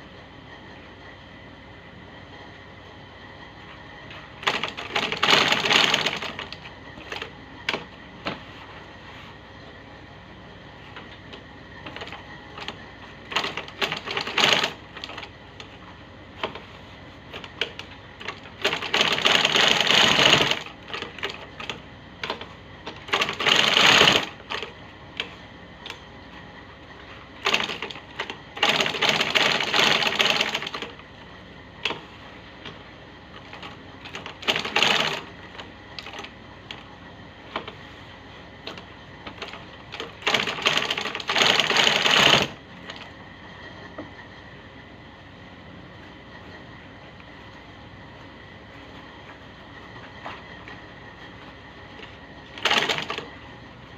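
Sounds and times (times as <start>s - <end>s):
sewing machine stitching: 4.4s - 8.5s, 11.8s - 15.3s, 17.3s - 26.0s, 27.4s - 31.0s, 33.4s - 36.8s, 38.6s - 43.1s, 52.4s - 53.4s.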